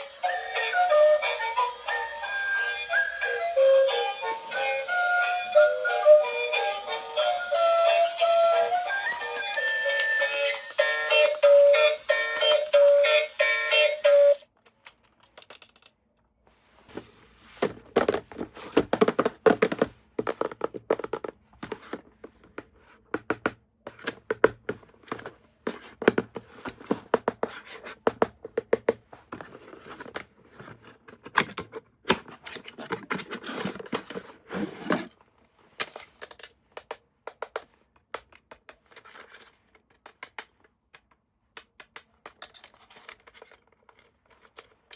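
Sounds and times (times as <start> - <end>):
electronic toy tune: 0.0 - 14.4
plastic toys and packaging handled: 7.2 - 44.9.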